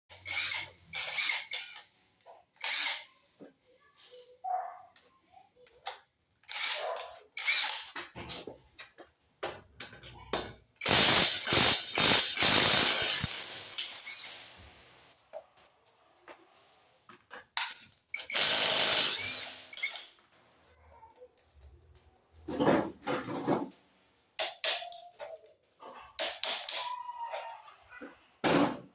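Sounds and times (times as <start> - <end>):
ratchet wrench clicking: 0.2 - 1.8, 2.6 - 3.1, 6.5 - 8.0, 10.8 - 14.4, 18.2 - 20.1.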